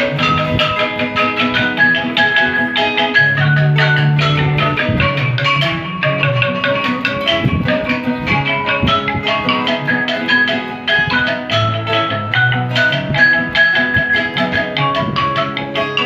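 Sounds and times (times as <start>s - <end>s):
traditional band playing lively tune: 0.0s - 16.0s.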